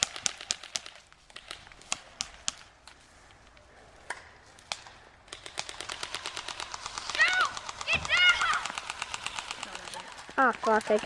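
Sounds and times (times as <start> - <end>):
airsoft gun automatic burst: 5.3 - 11.0.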